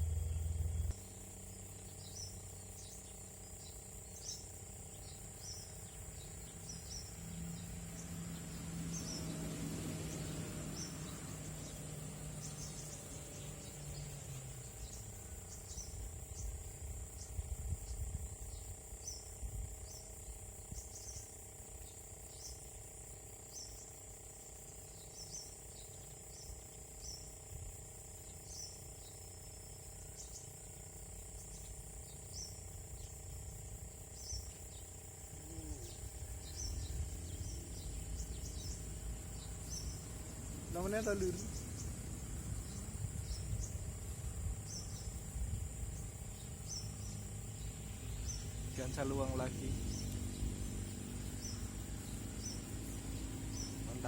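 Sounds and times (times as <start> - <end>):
low hum: 0.0 - 21.0
crickets droning: 0.0 - 54.0.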